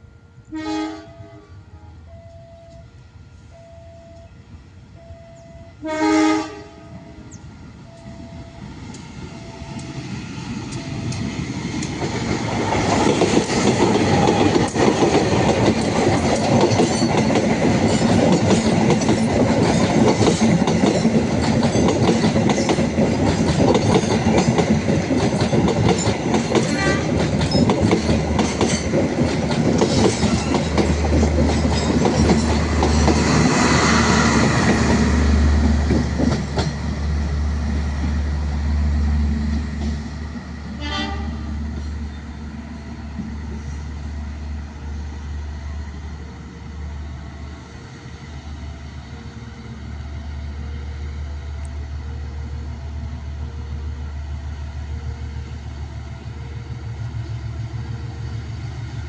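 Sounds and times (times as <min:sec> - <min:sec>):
train wheels clacking over rail joints: 0:10.7 - 0:37.0.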